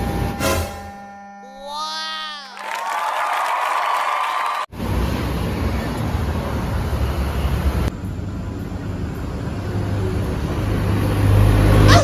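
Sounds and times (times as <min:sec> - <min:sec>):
road noise: 0:04.2 - 0:12.0
heavy vehicle engine rumble: 0:04.7 - 0:12.0.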